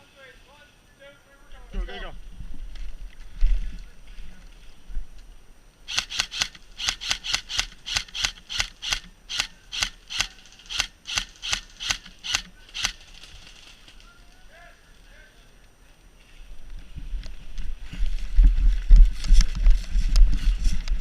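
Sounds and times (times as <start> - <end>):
rustling: 1.5 - 21.0
running footsteps in undergrowth: 10.1 - 15.1, 15.9 - 21.0.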